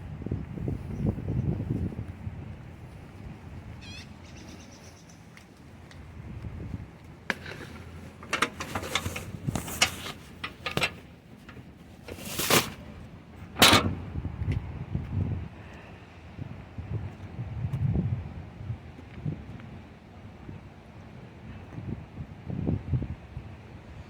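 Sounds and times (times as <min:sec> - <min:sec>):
bird chirp: 0:03.8 - 0:05.3
rustling: 0:07.4 - 0:13.1.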